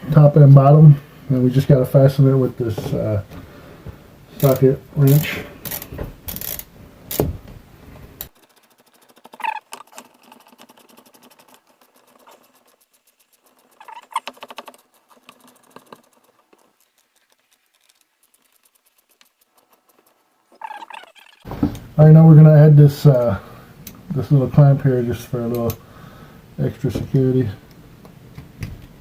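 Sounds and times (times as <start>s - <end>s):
handling noise: 1.6s - 22.0s
socket wrench ratcheting: 4.4s - 7.3s
short squeaks: 8.3s - 10.6s, 13.5s - 15.7s, 19.8s - 21.5s.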